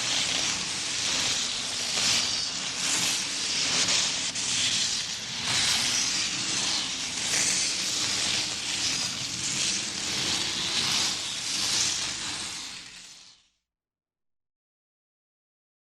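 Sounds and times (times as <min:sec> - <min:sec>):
skis hissing and scraping on snow: 0:00.0 - 0:13.5.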